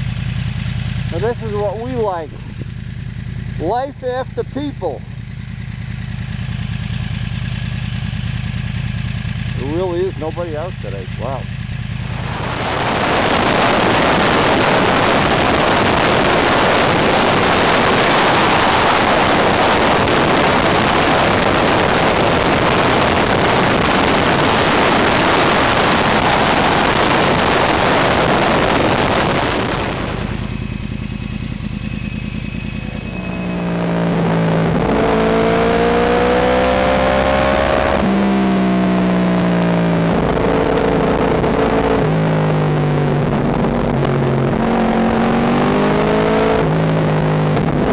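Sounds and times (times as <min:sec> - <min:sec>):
motorcycle engine accelerating: 0:00.0 - 0:47.9
wind rushing over microphone: 0:12.0 - 0:30.5.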